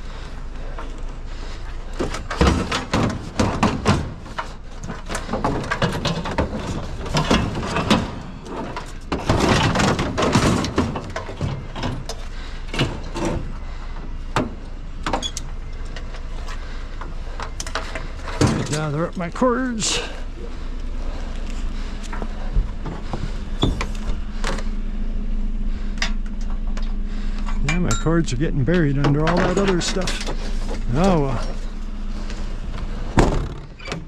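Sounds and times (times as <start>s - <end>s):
low rumble: 0.0s - 33.8s
metal scrap clanking: 2.1s - 13.5s, 28.9s - 33.9s.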